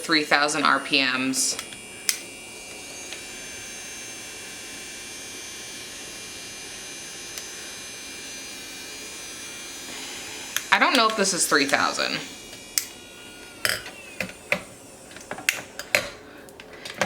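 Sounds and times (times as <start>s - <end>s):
nail drill high-pitched whine: 0.0s - 16.3s
nail drill switch click: 1.5s - 3.3s, 7.3s - 7.5s, 10.5s - 16.6s.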